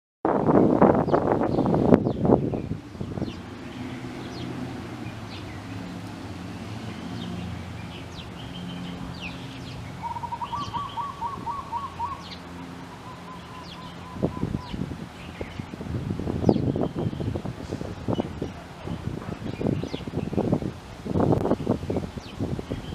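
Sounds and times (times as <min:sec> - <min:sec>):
rapid low bird trill: 0:01.0 - 0:15.8.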